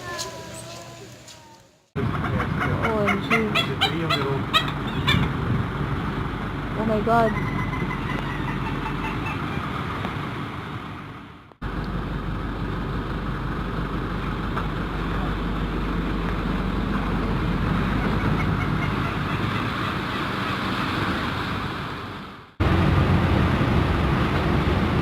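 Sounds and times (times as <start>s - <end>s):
strong wind rushing: 4.7s - 6.9s, 16.6s - 25.0s.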